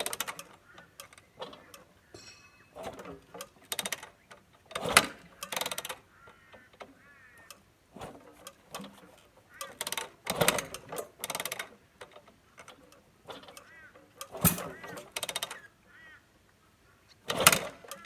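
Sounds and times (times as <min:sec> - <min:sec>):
motorcycle engine being kicked over: 0:00.0 - 0:06.0, 0:07.9 - 0:15.6, 0:17.3 - 0:18.0.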